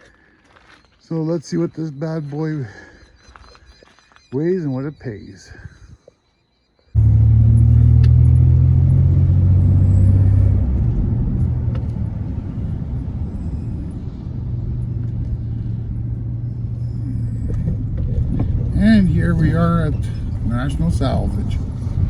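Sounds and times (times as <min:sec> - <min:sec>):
road rumble: 0:07.0 - 0:22.0
vehicle engine humming: 0:07.0 - 0:22.0.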